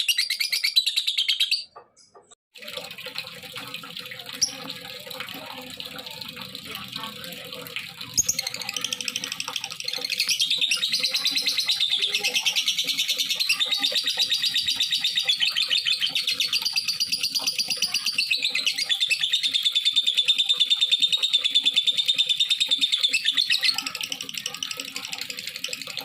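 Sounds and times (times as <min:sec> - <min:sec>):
bird chattering high chirps: 0:00.0 - 0:02.3, 0:08.1 - 0:26.0.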